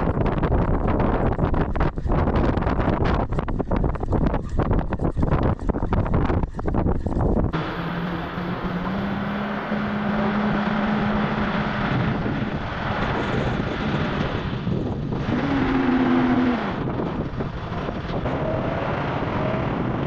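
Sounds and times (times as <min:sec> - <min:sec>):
wind buffeting microphone: 0:00.0 - 0:20.0
short rising tone: 0:07.6 - 0:12.9.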